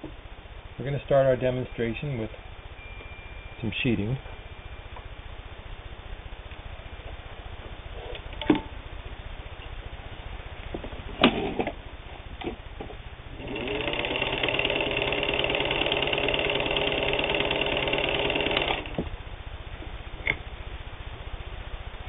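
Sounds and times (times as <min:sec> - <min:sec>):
sewing machine stitching: 0:13.4 - 0:19.0.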